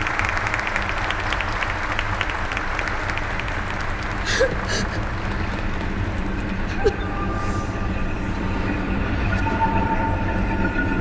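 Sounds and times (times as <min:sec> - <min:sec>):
crowd applauding: 0:00.0 - 0:06.8.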